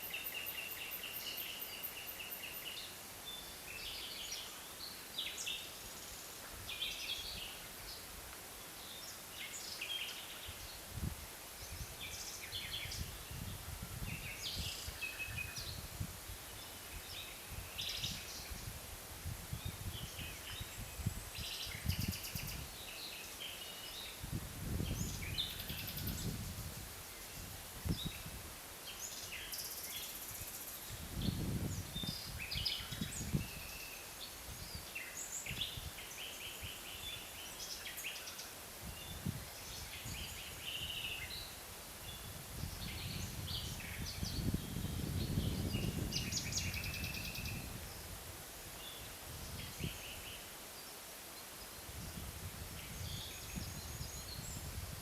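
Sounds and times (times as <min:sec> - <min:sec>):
small birds chirping: 0:19.5 - 0:48.2.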